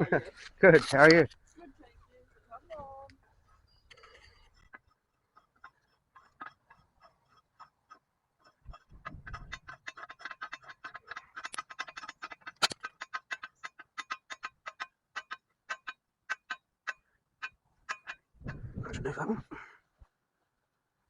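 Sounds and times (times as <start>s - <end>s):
sharp mechanical clicks: 9.6s - 15.3s.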